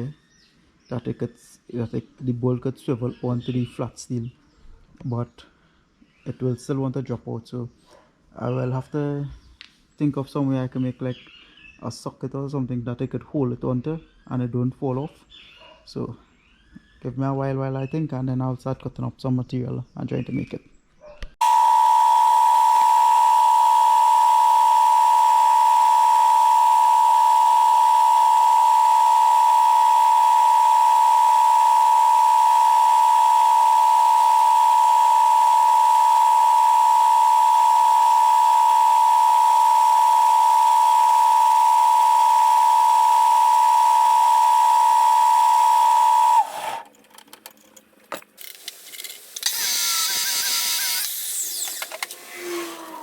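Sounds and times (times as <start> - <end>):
steady high-pitched tone: 21.4 - 46.5.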